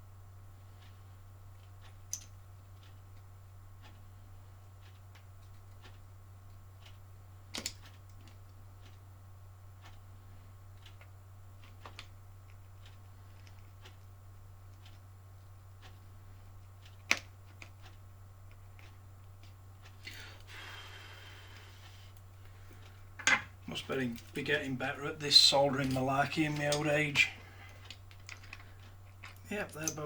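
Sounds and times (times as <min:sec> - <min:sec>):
steady low hum: 0:00.0 - 0:30.0
faint ticking: 0:00.4 - 0:30.0.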